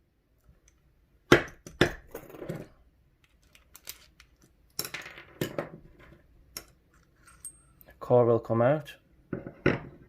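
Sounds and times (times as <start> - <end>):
padlock parts clicking and knocking: 3.2 - 5.7.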